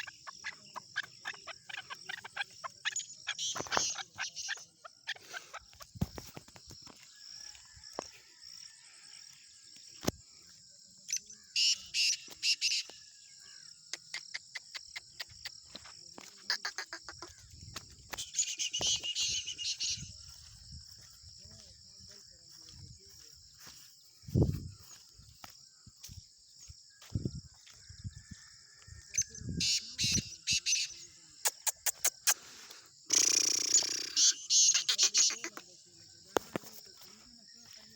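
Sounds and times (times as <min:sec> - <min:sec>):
high insect drone: 0:15.0 - 0:37.9.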